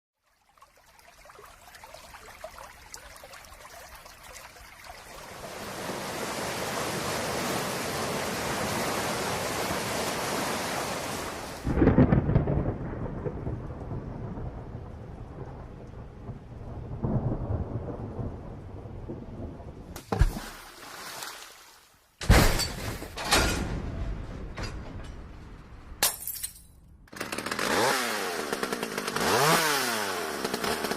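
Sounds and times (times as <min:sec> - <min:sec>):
rain hiss: 0:01.4 - 0:11.8
thunder crack and rumble: 0:11.6 - 0:20.0, 0:23.4 - 0:26.0.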